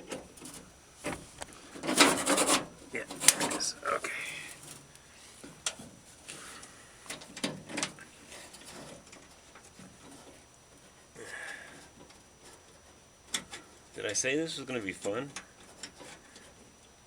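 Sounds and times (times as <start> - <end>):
metal scrape: 1.7 - 3.8.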